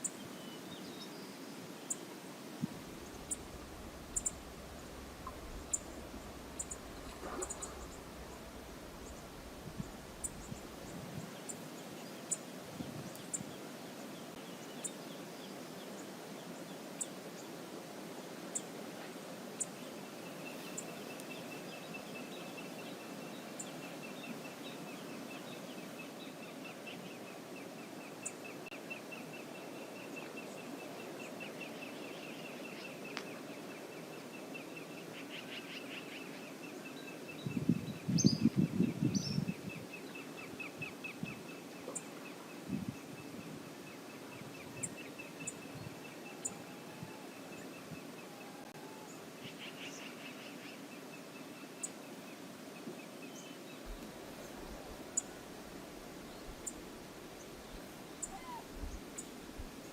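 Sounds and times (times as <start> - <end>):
river flowing: 0.0 - 37.5, 39.5 - 59.9
low thumps: 2.6 - 11.0
faint high pulsing tone: 2.7 - 11.0.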